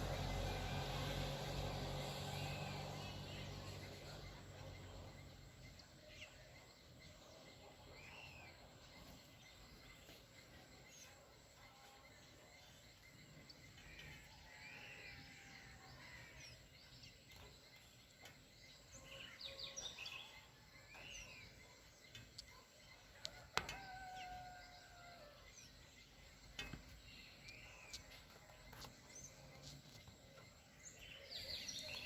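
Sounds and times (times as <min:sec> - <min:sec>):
outdoor background noise: 0:00.0 - 0:32.0
bird chirps and calls: 0:30.9 - 0:32.0.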